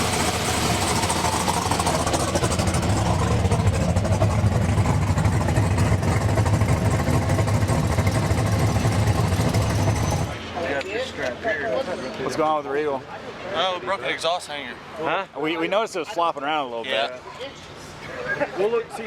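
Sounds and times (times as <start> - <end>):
car engine and exhaust droning: 0.0 - 10.7.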